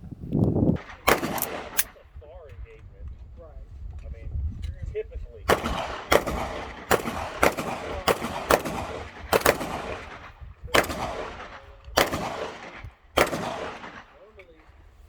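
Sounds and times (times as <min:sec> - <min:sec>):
gunshot echo: 0:00.8 - 0:02.0, 0:05.5 - 0:14.3
suppressed pistol shots: 0:00.8 - 0:02.0, 0:05.5 - 0:14.3.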